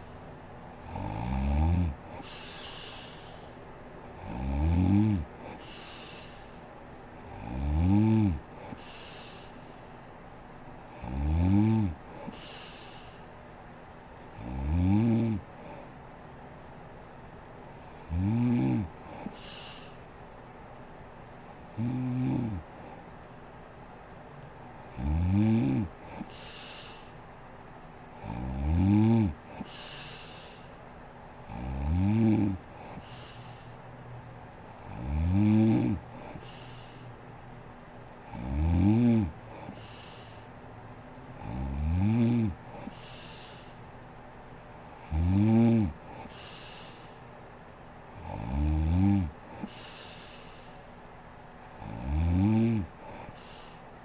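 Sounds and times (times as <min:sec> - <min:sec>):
woman snoring: 0:00.0 - 0:00.2, 0:00.8 - 0:06.6, 0:07.2 - 0:09.6, 0:10.9 - 0:13.2, 0:14.4 - 0:15.5, 0:17.9 - 0:20.0, 0:21.7 - 0:23.0, 0:24.9 - 0:27.1, 0:28.2 - 0:30.7, 0:31.5 - 0:33.7, 0:34.8 - 0:37.1, 0:38.3 - 0:40.5, 0:41.4 - 0:43.8, 0:45.0 - 0:47.2, 0:48.2 - 0:50.8, 0:51.8 - 0:53.8
breathy hiss: 0:00.0 - 0:10.3, 0:10.9 - 0:13.5, 0:17.8 - 0:20.2, 0:25.5 - 0:27.4, 0:28.2 - 0:34.2, 0:34.8 - 0:37.5, 0:38.2 - 0:48.6, 0:49.4 - 0:54.0.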